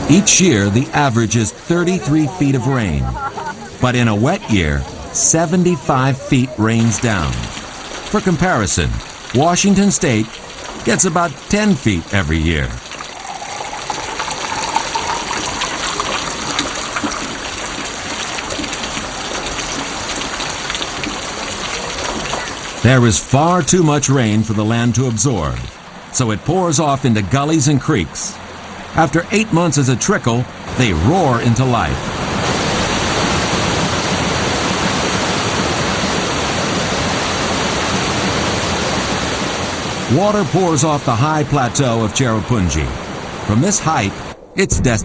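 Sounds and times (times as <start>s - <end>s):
rain hissing: 0.0s - 23.7s
roar of rushing water: 0.0s - 26.2s, 30.4s - 44.7s.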